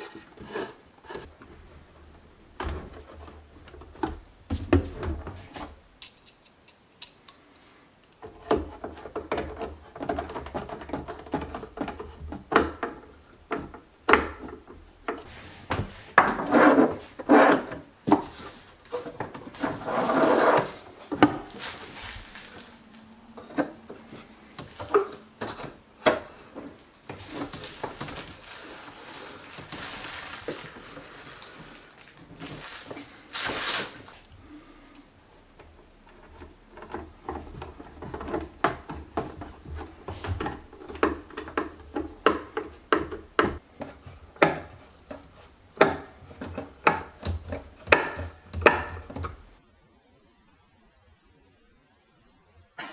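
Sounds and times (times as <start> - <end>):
objects knocking and clicking: 35.6 - 49.5.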